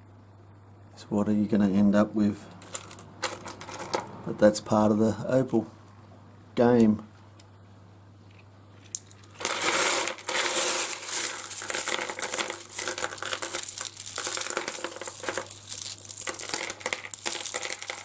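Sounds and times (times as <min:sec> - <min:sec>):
stones clattering together: 0:09.0 - 0:18.0.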